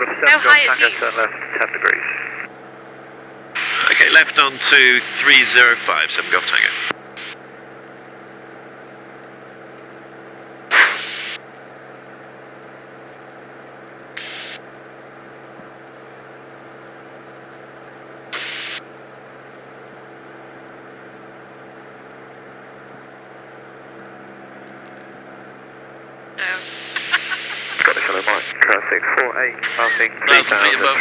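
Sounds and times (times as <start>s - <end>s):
radio hiss bursts: 3.6s - 4.2s, 6.1s - 7.4s, 10.7s - 11.4s, 14.2s - 14.6s, 18.3s - 18.9s, 26.4s - 31.0s
aircraft engine drone: 25.6s - 31.0s.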